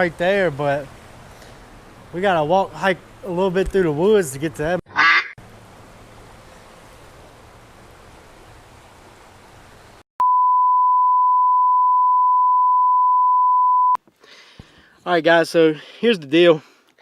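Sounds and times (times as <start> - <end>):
loud beep tone: 10.2 - 14.0.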